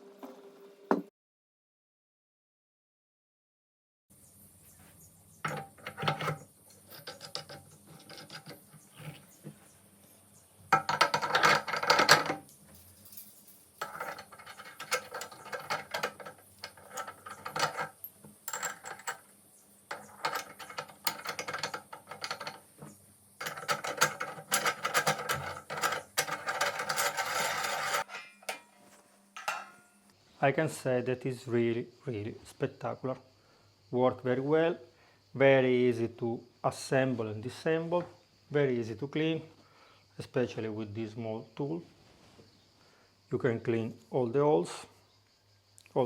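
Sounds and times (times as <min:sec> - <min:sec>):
metal scraping and clicking: 0:05.4 - 0:09.5, 0:10.7 - 0:29.9.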